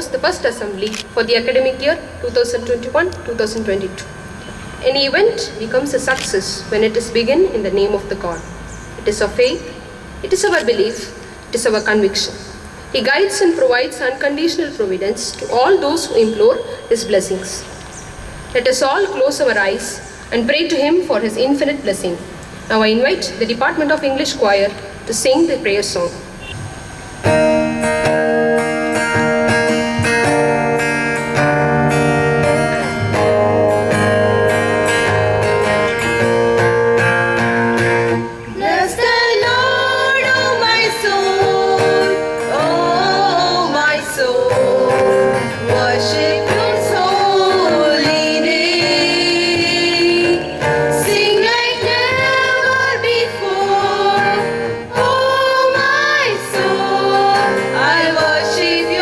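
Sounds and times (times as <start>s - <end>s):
strummed guitar: 22.2s - 59.0s
choir singing: 27.4s - 59.0s.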